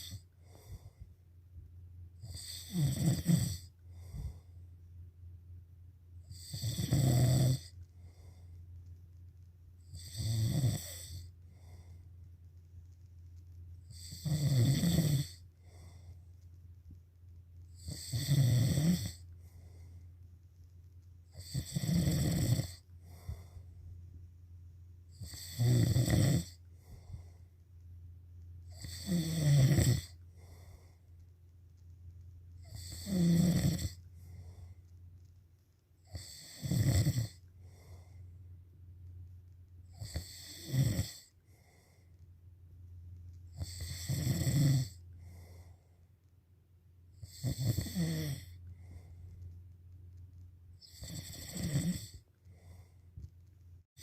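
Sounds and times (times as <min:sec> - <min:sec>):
low steady hum: 0:00.0 - 0:51.3, 0:52.0 - 0:54.0
person snoring: 0:02.2 - 0:04.4, 0:06.3 - 0:08.3, 0:09.9 - 0:11.9, 0:13.9 - 0:16.0, 0:17.8 - 0:19.2, 0:21.3 - 0:23.6, 0:25.1 - 0:27.4, 0:28.7 - 0:31.0, 0:32.6 - 0:34.6, 0:36.0 - 0:38.1, 0:39.9 - 0:41.9, 0:43.6 - 0:45.7, 0:47.2 - 0:49.0, 0:50.8 - 0:52.9.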